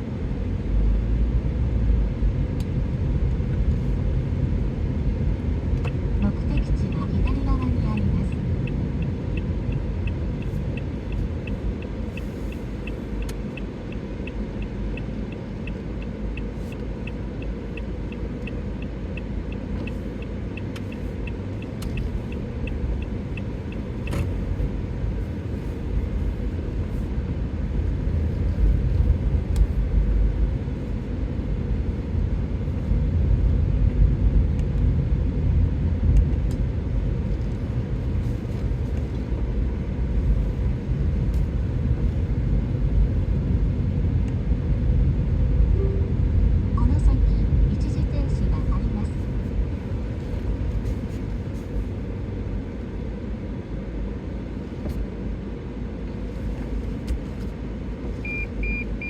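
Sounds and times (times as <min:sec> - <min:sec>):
car cabin rumble: 0:00.0 - 0:53.4
turn signal ticking: 0:02.5 - 0:31.9.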